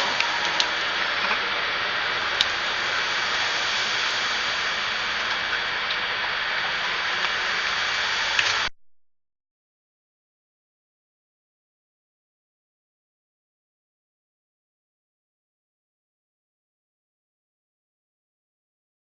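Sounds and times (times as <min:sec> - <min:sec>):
faint high-pitched whines: 0:00.0 - 0:08.7
machine hiss: 0:00.0 - 0:08.7.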